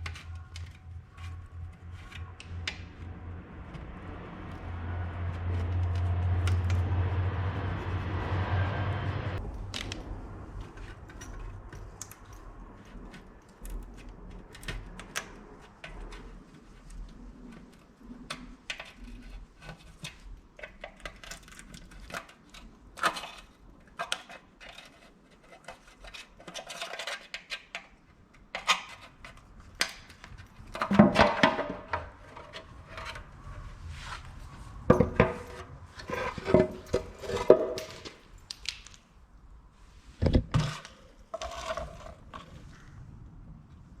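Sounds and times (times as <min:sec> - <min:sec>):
engine running: 0:02.5 - 0:10.7.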